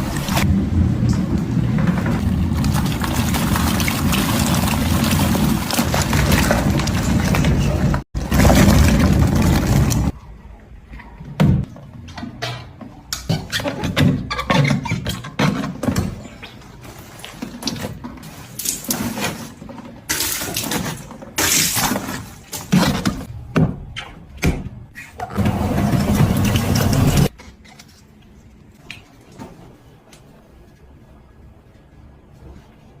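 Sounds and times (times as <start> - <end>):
water rushing into washing machine: 0.0 - 10.1, 25.4 - 27.3
washing machine running: 0.0 - 10.2, 25.3 - 27.3.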